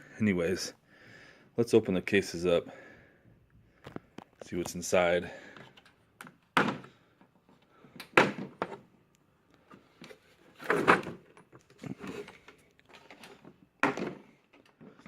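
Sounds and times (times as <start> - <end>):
plastic case handling rattles: 10.5 - 14.7.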